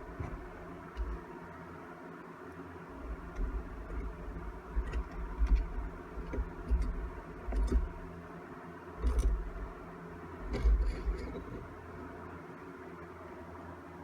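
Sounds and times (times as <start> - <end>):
low bumps: 0.0 - 1.3, 2.9 - 8.1
clicks of tools and engine parts: 4.8 - 8.0, 9.0 - 9.7.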